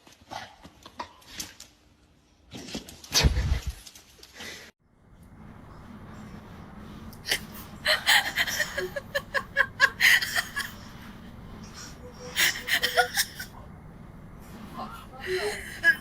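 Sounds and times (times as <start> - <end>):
low background hum: 0.0 - 16.0
person laughing: 7.2 - 11.0, 12.2 - 13.6, 14.8 - 16.0.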